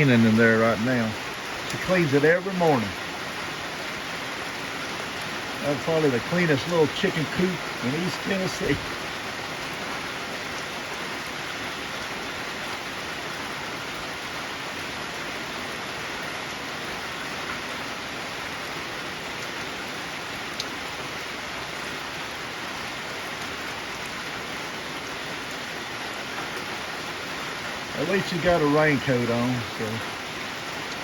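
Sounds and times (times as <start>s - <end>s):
heavy rain pattering: 0.0s - 31.0s.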